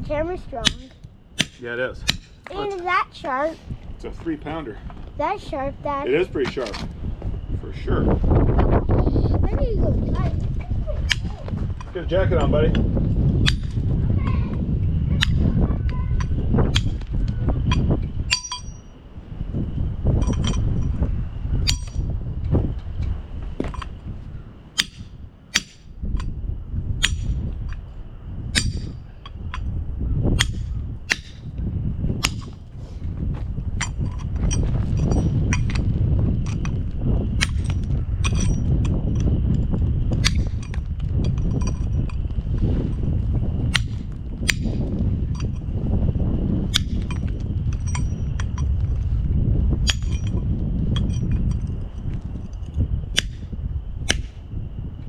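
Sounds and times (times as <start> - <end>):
low rumble: 0.0 - 55.0
sledgehammer striking chisel: 0.6 - 2.5, 13.4 - 13.8, 17.7 - 18.9, 21.6 - 22.1, 24.8 - 25.9, 27.0 - 27.4, 28.6 - 29.0, 30.4 - 31.5, 32.2 - 32.6, 37.4 - 38.7, 43.7 - 44.8, 49.8 - 50.4, 53.2 - 53.5, 54.1 - 54.4.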